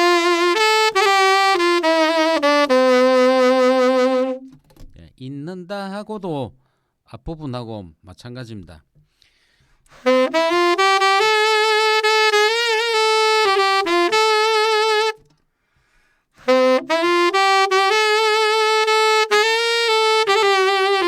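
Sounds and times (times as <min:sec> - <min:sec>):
saxophone melody: 0:00.0 - 0:04.7, 0:09.9 - 0:15.3, 0:16.4 - 0:21.0.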